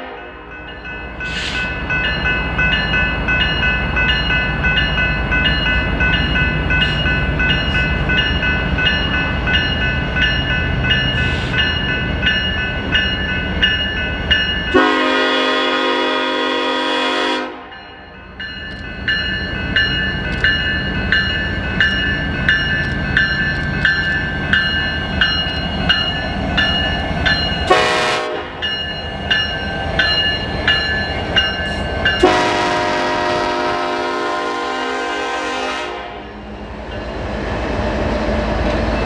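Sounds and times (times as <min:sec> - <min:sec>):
locomotive horn: 0:00.0 - 0:00.5, 0:14.7 - 0:17.7, 0:27.7 - 0:28.6, 0:32.2 - 0:36.4
train cars rolling past: 0:00.0 - 0:16.5.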